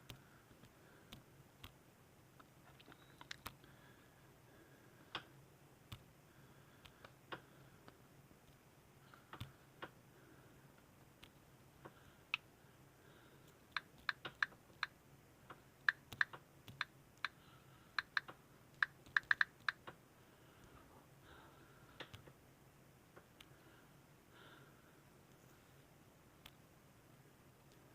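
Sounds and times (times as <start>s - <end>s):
keyboard keys clicking: 18.0s - 20.0s.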